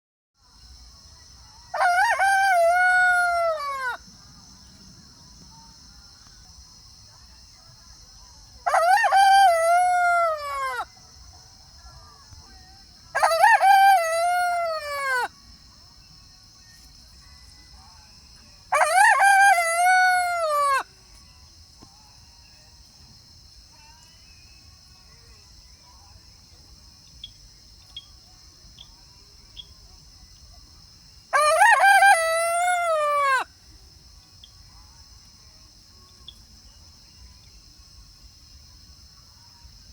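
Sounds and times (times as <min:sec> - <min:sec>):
rooster crowing: 0:01.7 - 0:04.0, 0:08.6 - 0:10.9, 0:13.1 - 0:15.3, 0:18.7 - 0:20.9, 0:31.3 - 0:33.5.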